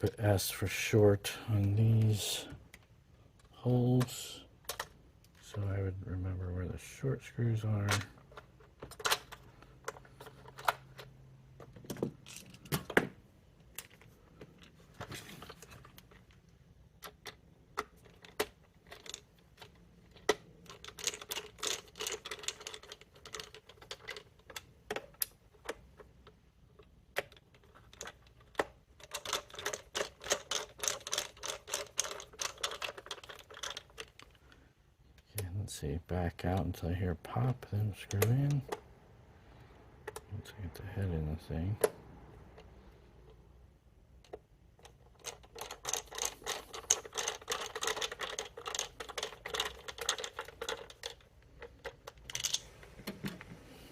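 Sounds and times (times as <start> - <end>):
plastic parts knocking: 7.9 - 13.2, 16.9 - 26.1, 26.8 - 34.4, 44.2 - 53.7.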